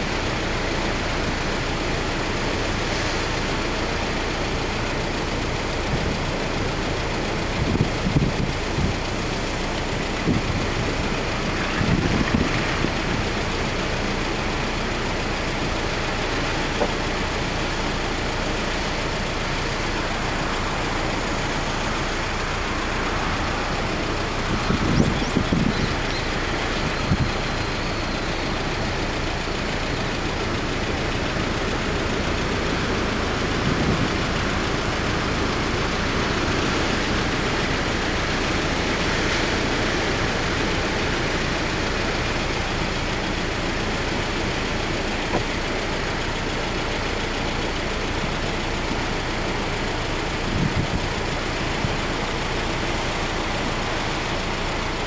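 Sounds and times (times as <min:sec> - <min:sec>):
surf on the coast: 0:00.0 - 0:55.0
typhoon wind: 0:00.0 - 0:55.0
wind gusts buffeting microphone: 0:07.2 - 0:14.2, 0:18.5 - 0:27.9, 0:32.0 - 0:42.8, 0:50.1 - 0:54.9.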